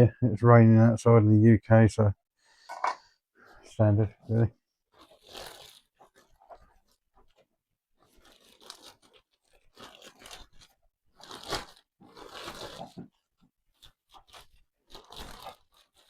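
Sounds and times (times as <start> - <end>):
packaging crinkling and tearing: 4.9 - 16.0.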